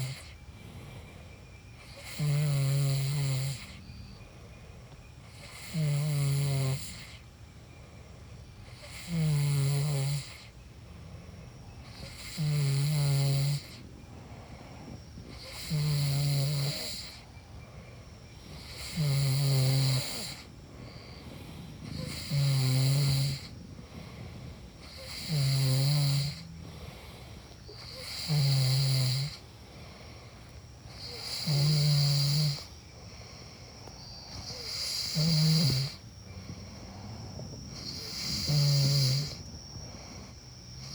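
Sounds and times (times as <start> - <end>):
person snoring: 1.8 - 3.8, 5.3 - 7.2, 8.8 - 10.5, 11.9 - 13.8, 14.7 - 17.3, 18.6 - 29.4, 30.9 - 40.9.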